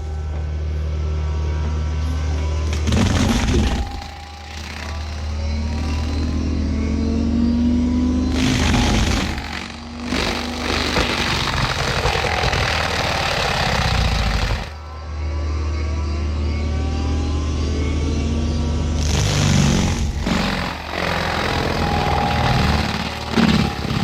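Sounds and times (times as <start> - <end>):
excavator diesel engine: 0.0 - 15.0, 17.8 - 24.0
mulcher grinding wood: 2.6 - 6.6, 8.3 - 14.9, 19.0 - 24.0.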